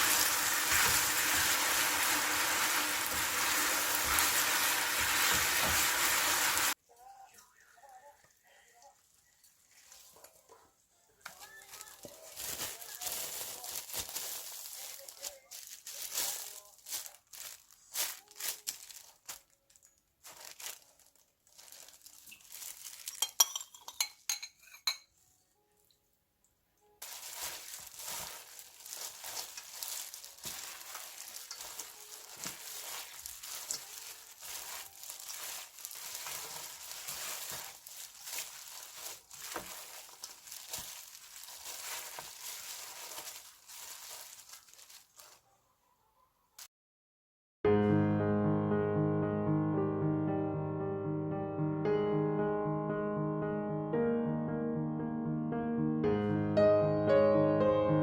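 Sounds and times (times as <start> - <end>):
food frying in a pan: 0.0 - 6.8, 27.0 - 45.2
utensils and dishes clinking: 23.0 - 25.2.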